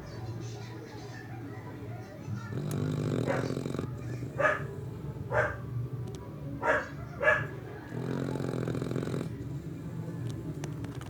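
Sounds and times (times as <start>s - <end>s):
dog barking: 1.1s - 9.3s.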